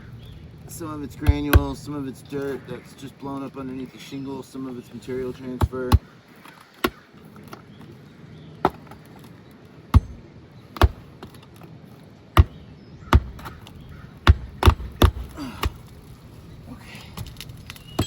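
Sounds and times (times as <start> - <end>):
hammer striking nails: 1.2 - 1.8, 9.9 - 10.2, 10.8 - 11.4, 12.4 - 15.8.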